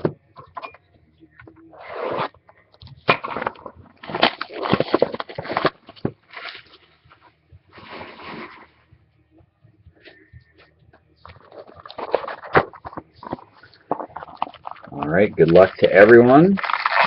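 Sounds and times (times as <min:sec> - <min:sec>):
packaging crinkling and tearing: 0:03.4 - 0:06.8, 0:11.3 - 0:17.0.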